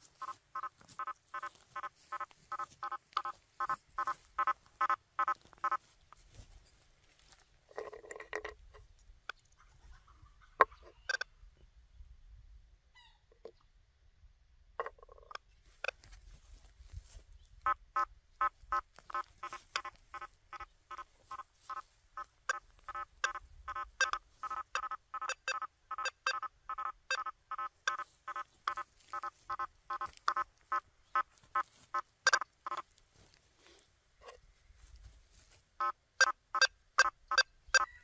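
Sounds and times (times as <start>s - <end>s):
metal detector beeps: 22.5s - 30.8s, 31.5s - 32.8s.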